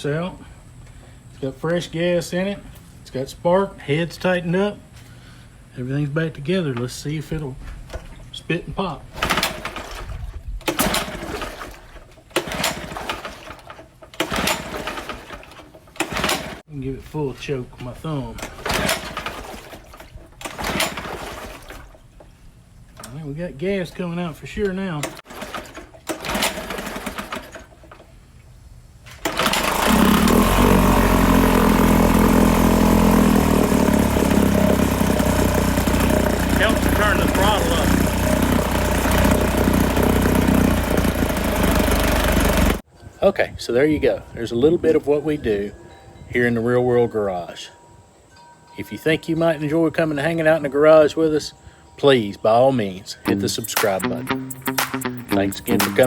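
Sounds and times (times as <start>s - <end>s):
small engine pull-started: 9.1s - 16.7s, 17.4s - 22.2s, 24.5s - 28.2s, 29.0s - 42.8s, 53.3s - 56.0s.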